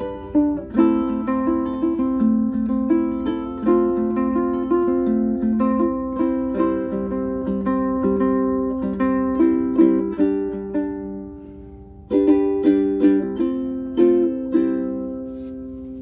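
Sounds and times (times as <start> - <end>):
ukulele fingerpicked: 0.0 - 16.0.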